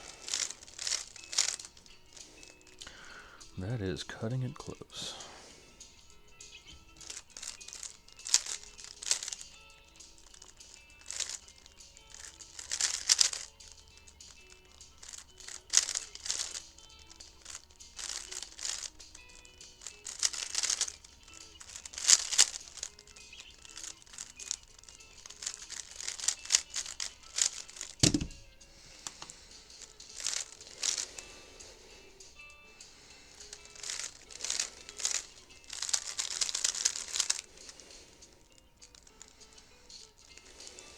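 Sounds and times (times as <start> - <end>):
faint music: 0.0 - 40.9
puzzle cube clicking and rattling: 0.0 - 40.9
dull thump: 28.0 - 28.5.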